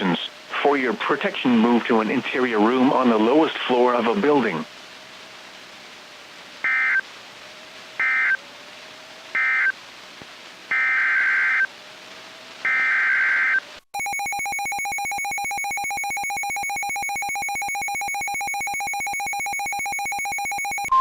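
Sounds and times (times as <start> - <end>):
digital data bursts: 12.6 - 21.0
harsh two-tone attention signal: 12.7 - 21.0.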